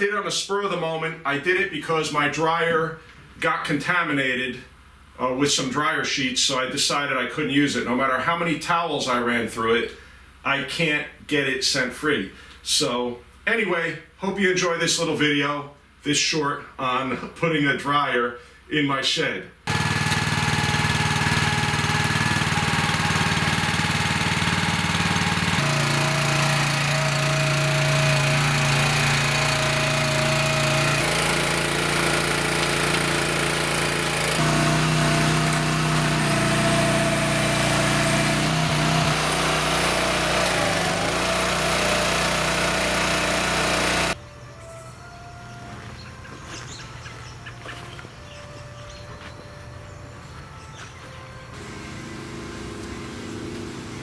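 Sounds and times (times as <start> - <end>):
machine engine running: 19.7 - 44.2, 51.6 - 54.0.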